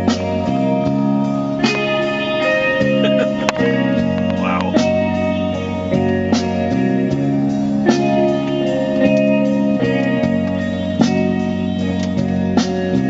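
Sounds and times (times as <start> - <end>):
guitar chords and plucked notes: 0.0 - 13.0.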